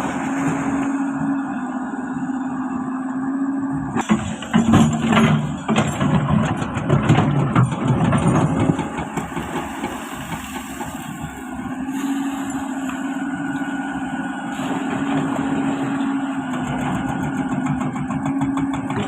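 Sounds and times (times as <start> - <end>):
excavator engine running: 0.0 - 19.0
knocking and clatter: 4.0 - 11.0, 16.5 - 19.0.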